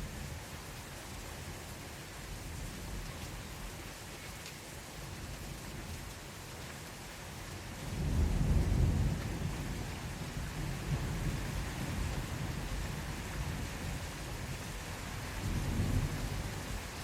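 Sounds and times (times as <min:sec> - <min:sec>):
steady rain falling: 0:00.0 - 0:17.0
low thunder rumble: 0:07.9 - 0:12.8.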